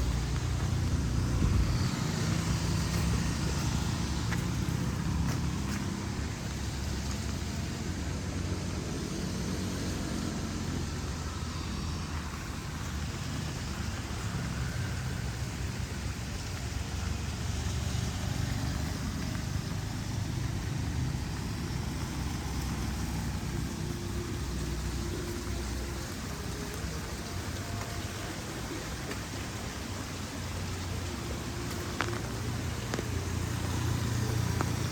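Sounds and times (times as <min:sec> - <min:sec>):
low steady rumble: 0:00.0 - 0:08.9
steady rain: 0:00.0 - 0:34.9.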